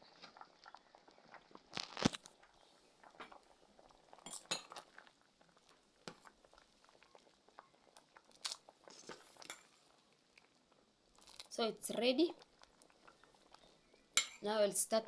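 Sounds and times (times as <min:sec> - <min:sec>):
pots and utensils clinking: 0:04.2 - 0:04.8, 0:14.2 - 0:14.4.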